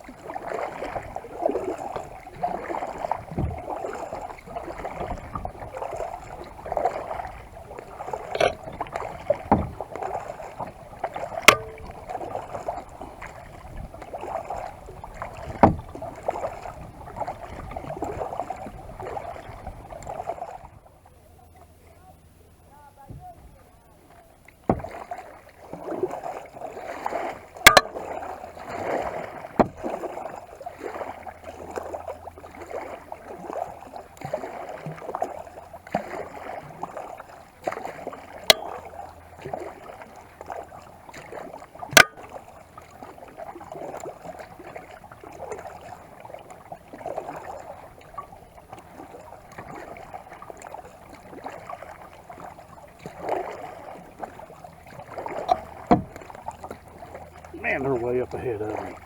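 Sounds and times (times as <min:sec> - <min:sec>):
kayak paddle splashing water: 0:00.0 - 0:59.0
sharp knocks: 0:08.4 - 0:08.8, 0:11.4 - 0:12.0, 0:27.7 - 0:28.0, 0:38.5 - 0:38.8, 0:55.5 - 0:56.2.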